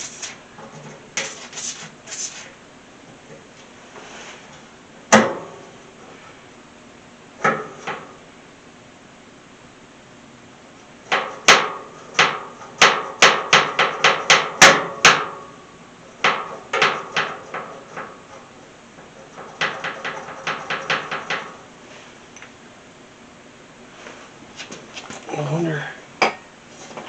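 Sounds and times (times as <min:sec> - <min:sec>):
sharp metallic knocks: 0:11.1 - 0:15.4, 0:16.2 - 0:18.1, 0:19.3 - 0:21.6.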